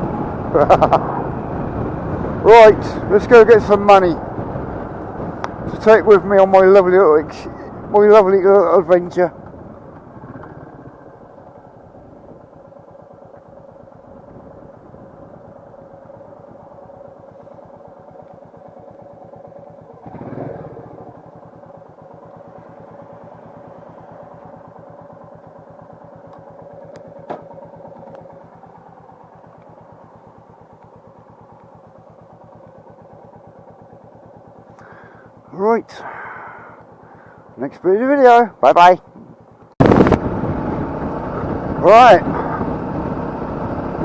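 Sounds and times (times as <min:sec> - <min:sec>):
motorcycle engine running: 0:00.0 - 0:44.0.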